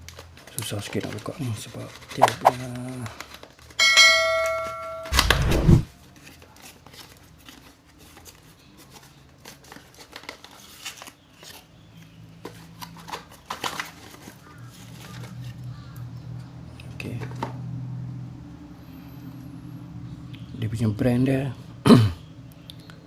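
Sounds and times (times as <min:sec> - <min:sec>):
packaging rustling and crinkling: 0:00.0 - 0:03.8, 0:06.1 - 0:11.7, 0:12.4 - 0:15.3
bell-like chime: 0:03.8 - 0:05.2.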